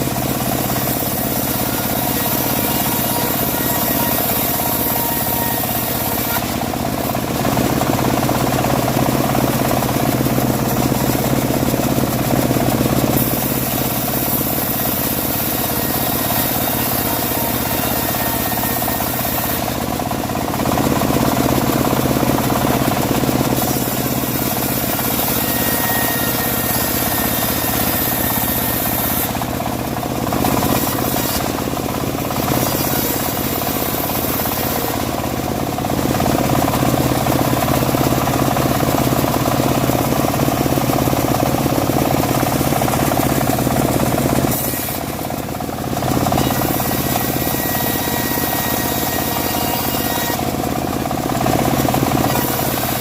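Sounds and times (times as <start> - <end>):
bandsaw machine drone: 0.0 - 53.0
saw cutting hiss: 30.4 - 35.2.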